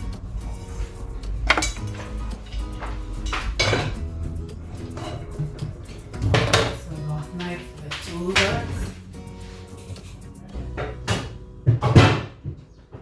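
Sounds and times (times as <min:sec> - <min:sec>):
dishes and utensils clinking: 0:00.0 - 0:12.6.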